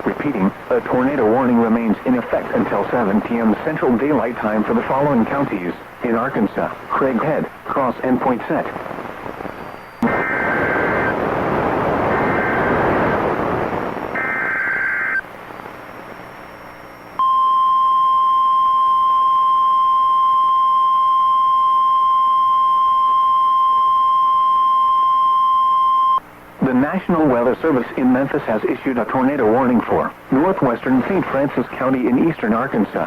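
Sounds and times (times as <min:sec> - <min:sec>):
radio static: 0:00.0 - 0:17.2, 0:26.6 - 0:33.0
steady warning alarm tone: 0:10.0 - 0:11.2, 0:12.1 - 0:13.2, 0:14.2 - 0:15.2
warbling digital data tones: 0:14.1 - 0:15.2.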